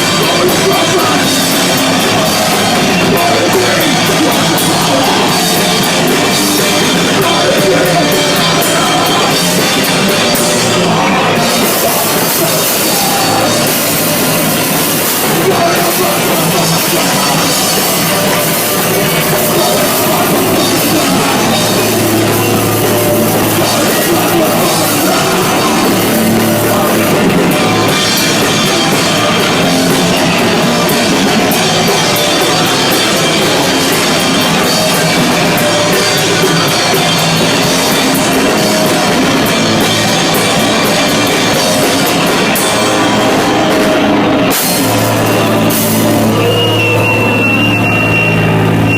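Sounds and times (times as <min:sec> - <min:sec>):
live punk rock band: 0:00.0 - 0:48.9.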